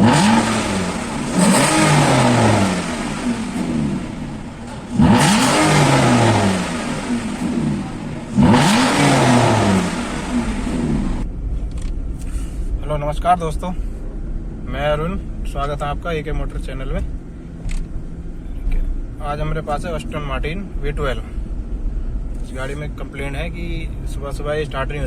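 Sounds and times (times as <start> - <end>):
engine revving: 0.0 - 11.3.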